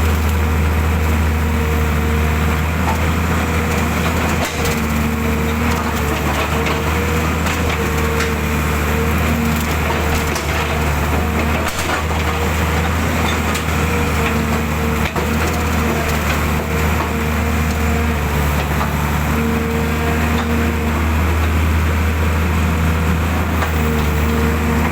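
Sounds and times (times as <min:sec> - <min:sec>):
diesel engine running: 0:00.0 - 0:24.9
crackling digging noise: 0:02.6 - 0:20.8.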